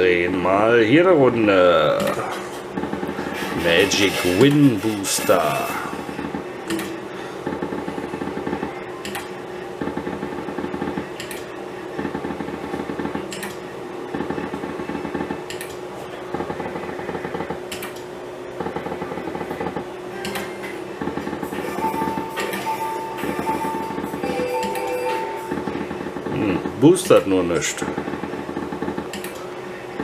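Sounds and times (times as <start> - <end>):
slot machine sharp click: 21.6 - 25.7.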